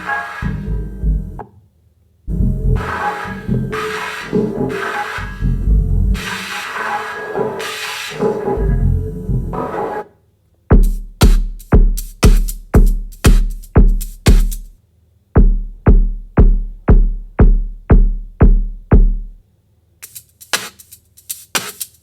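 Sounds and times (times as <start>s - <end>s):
electronic kick drum: 10.7s - 14.8s, 15.4s - 19.4s.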